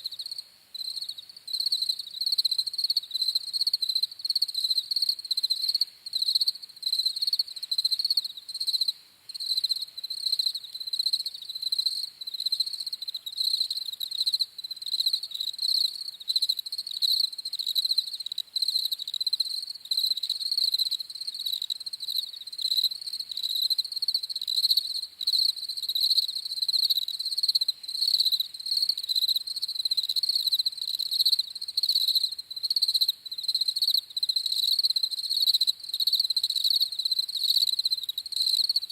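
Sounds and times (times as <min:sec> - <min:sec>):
crickets chirping: 0:00.0 - 0:38.9.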